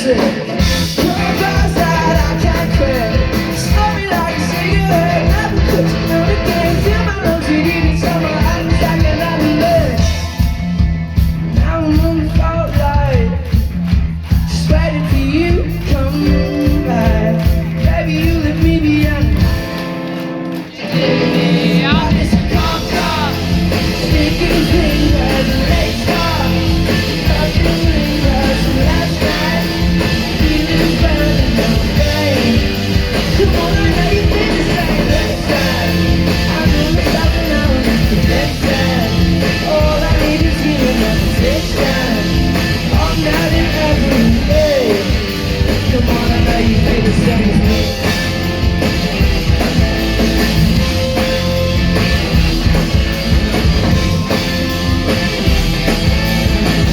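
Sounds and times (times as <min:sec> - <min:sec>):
person singing: 0:00.0 - 0:10.3, 0:14.6 - 0:19.7, 0:20.7 - 0:48.1
rock band playing: 0:00.0 - 0:56.9.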